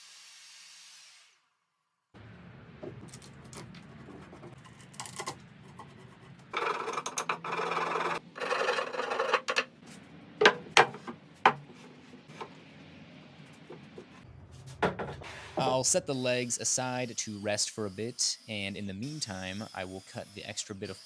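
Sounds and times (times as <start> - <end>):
scraping on wood: 3.9 - 9.7.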